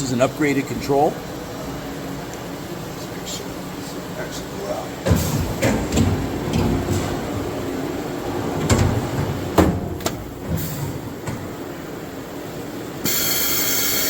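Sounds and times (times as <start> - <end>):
low sliding rumble: 5.4 - 12.0.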